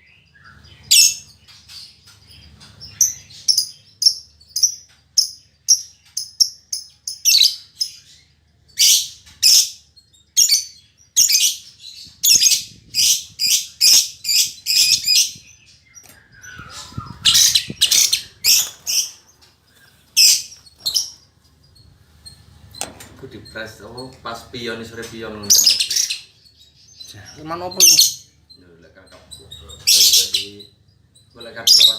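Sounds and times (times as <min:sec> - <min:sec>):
lovebird shrill chirps: 0:08.8 - 0:23.8, 0:25.4 - 0:28.6.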